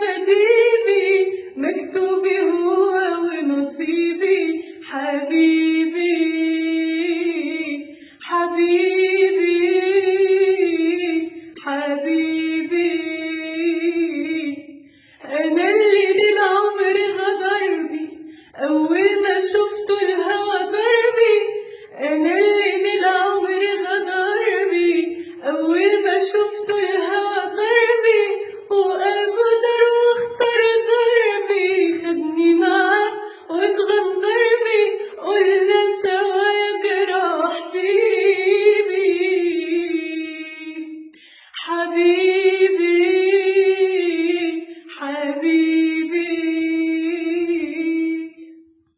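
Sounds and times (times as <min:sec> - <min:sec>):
woman singing unaccompanied: 0:00.0 - 0:48.6.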